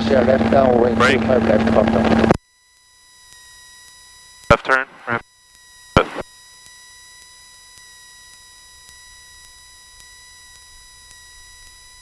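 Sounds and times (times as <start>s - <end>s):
radio transmission burst: 0.0s - 2.4s, 4.5s - 5.2s, 6.0s - 6.3s.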